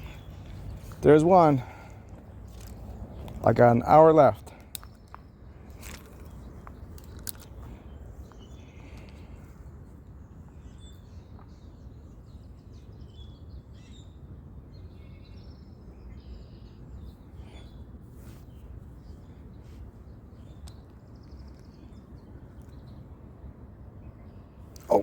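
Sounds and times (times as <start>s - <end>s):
steady low rumble: 0.0s - 12.7s
bird chirps: 10.3s - 17.8s.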